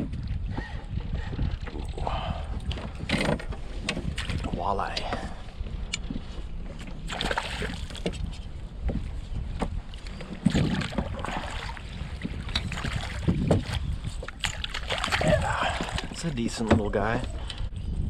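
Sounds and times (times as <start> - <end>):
wind rumble on microphone: 0.0 - 18.0.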